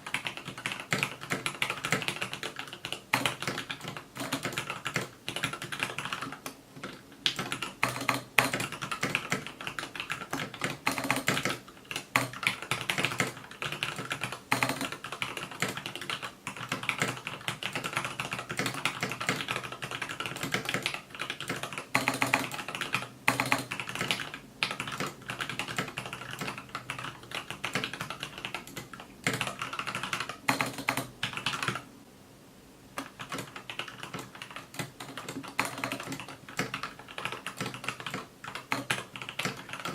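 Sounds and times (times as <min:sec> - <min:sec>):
mechanical keyboard typing: 0:00.0 - 0:31.8, 0:33.0 - 0:39.9.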